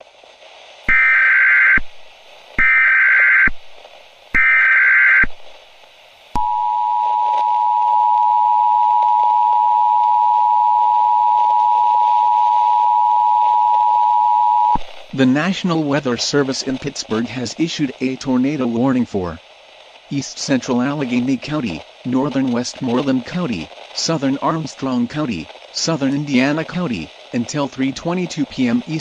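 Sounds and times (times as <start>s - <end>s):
buzzy data bursts: 0.9s - 1.9s, 4.3s - 5.4s
two-tone attention signal: 6.4s - 14.8s.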